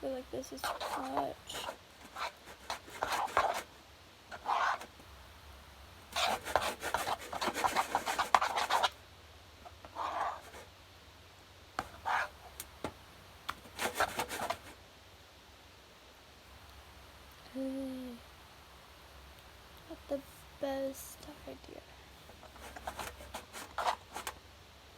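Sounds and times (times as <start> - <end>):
spoon scraping slime in bowl: 0.6 - 3.6.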